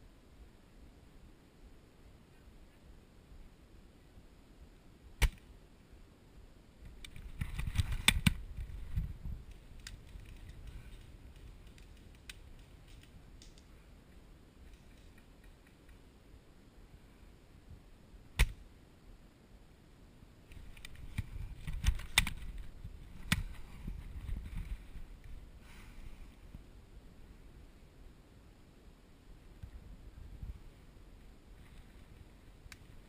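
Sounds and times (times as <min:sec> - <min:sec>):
rustling and clicking: 0:06.8 - 0:16.0, 0:20.5 - 0:25.4.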